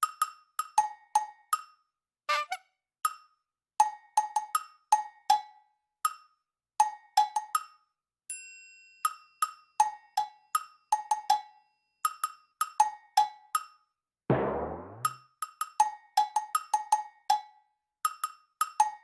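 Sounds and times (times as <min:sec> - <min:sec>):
percussion knocks: 0:14.3 - 0:15.2.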